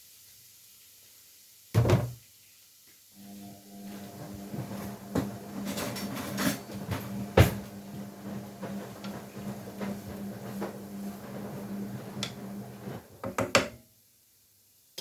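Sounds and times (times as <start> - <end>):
machine motor humming: 3.2 - 13.3.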